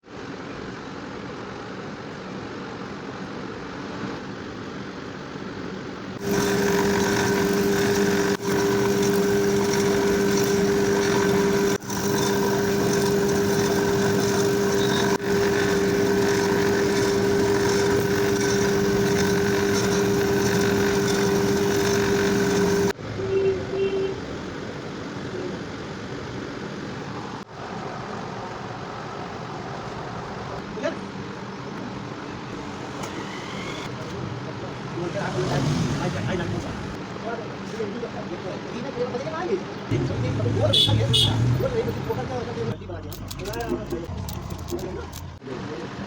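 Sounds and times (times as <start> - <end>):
ceiling fan motor humming: 6.0 - 23.0, 32.4 - 37.0.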